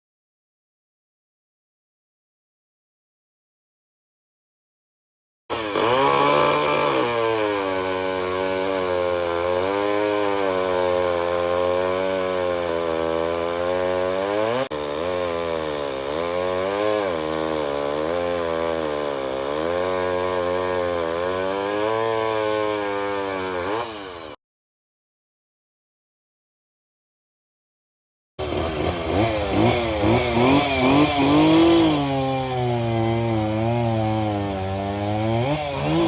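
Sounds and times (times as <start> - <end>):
chainsaw running and cutting: 5.5 - 24.4, 28.4 - 36.0.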